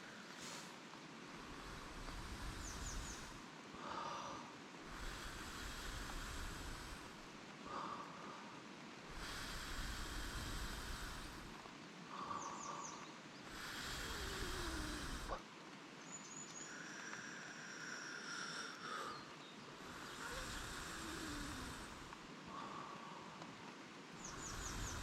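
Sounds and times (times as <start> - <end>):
rain rushing: 0.0 - 25.0
faint high chirps and whistles: 16.0 - 17.6.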